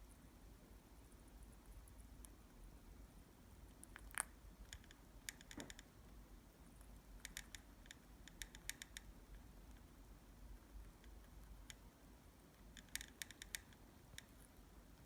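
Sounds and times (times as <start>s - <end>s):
bird beak nibbling fruit: 3.5s - 5.9s.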